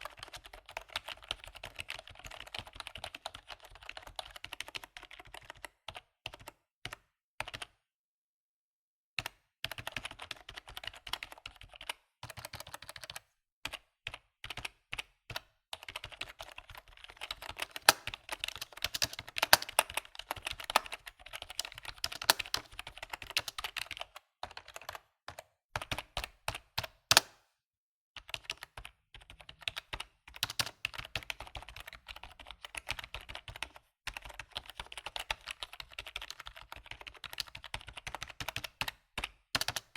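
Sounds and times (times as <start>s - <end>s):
typing on computer keyboard: 0.0s - 7.8s, 9.2s - 27.4s, 28.2s - 39.9s.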